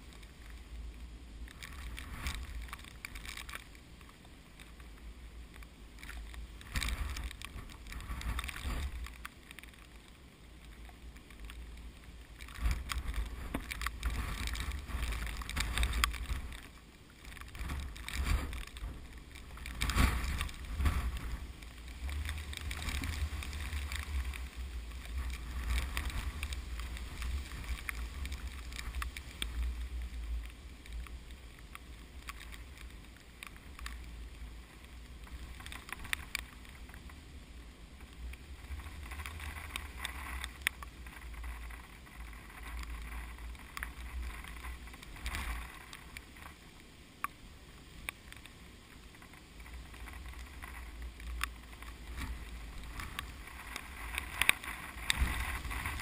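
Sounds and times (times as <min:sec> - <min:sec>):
small clicks: 0:00.0 - 0:37.2, 0:38.0 - 0:56.0
wind-blown plants rustling: 0:00.0 - 0:56.0
strong wind buffeting microphone: 0:49.9 - 0:56.0.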